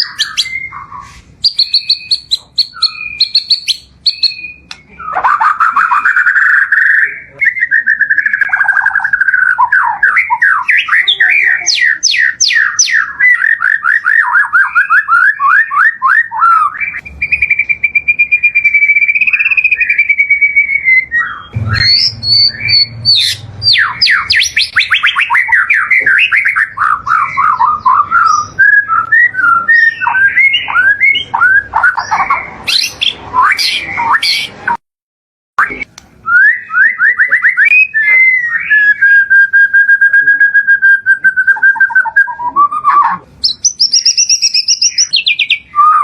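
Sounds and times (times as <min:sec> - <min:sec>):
songbird singing varied song: 0:00.0 - 0:05.2, 0:05.9 - 0:34.6, 0:43.2 - 0:46.0.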